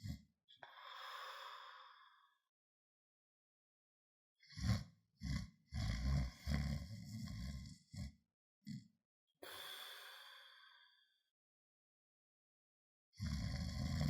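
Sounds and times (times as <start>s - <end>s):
long breathy exhale: 0.7s - 2.4s, 9.4s - 11.2s
person snoring: 4.5s - 8.1s, 13.2s - 14.0s.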